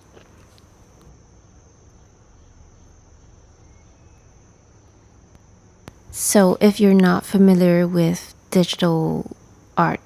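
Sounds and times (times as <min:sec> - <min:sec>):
faint background hiss: 0:00.0 - 0:10.0.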